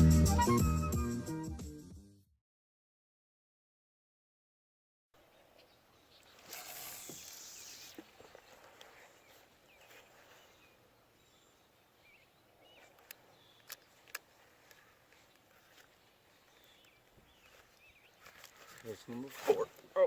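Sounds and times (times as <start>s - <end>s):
sharp clicks: 13.0s - 14.8s.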